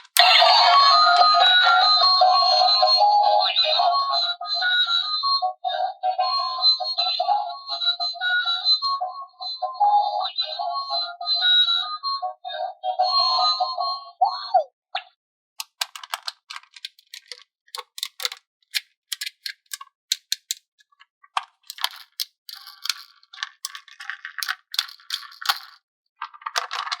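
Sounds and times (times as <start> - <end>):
plastic pieces clicking and rattling: 15.6 - 27.0.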